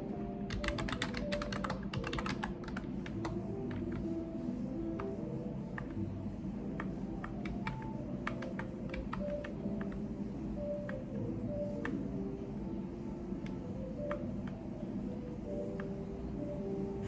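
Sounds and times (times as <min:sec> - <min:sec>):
low background hum: 0:00.0 - 0:17.0
keyboard typing clicks: 0:00.5 - 0:04.1, 0:05.0 - 0:06.0, 0:06.7 - 0:10.0, 0:13.4 - 0:14.6.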